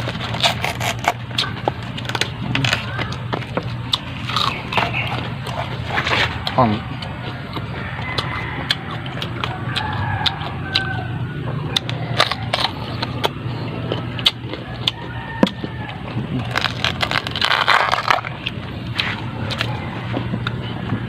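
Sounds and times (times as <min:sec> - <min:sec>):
crunchy chewing: 0:00.0 - 0:21.0
steady low hum: 0:00.0 - 0:21.0.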